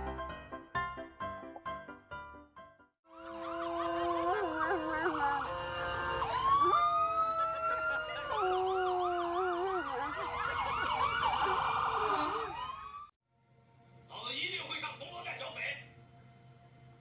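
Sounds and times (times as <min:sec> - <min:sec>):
siren wailing: 0:03.1 - 0:13.1.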